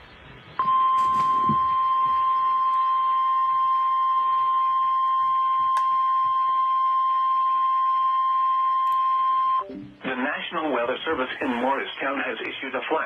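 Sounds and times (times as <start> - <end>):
faint radio hiss: 0.0 - 13.0
steady high warning tone: 0.6 - 10.0.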